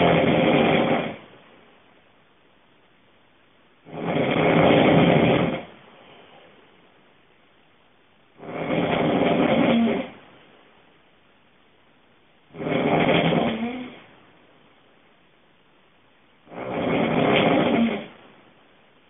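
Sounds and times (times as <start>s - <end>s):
person snoring loudly: 0.0s - 1.2s, 3.9s - 5.7s, 8.4s - 10.2s, 12.5s - 14.1s, 16.5s - 18.2s
quiet breathing: 4.0s - 7.1s.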